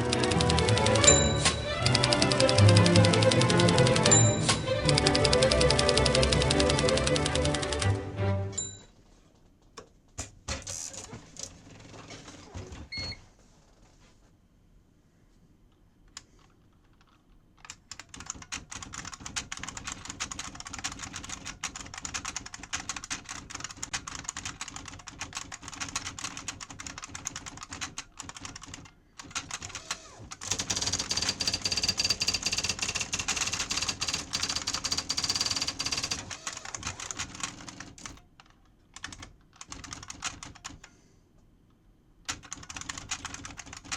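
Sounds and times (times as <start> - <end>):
electronic typewriter keys clicking: 0.0 - 8.0, 17.0 - 40.8, 42.3 - 43.9.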